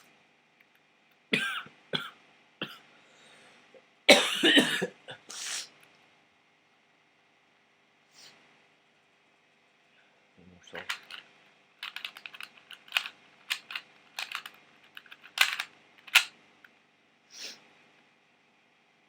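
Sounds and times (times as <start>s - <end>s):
plastic puzzle cube clicking: 11.8s - 16.3s.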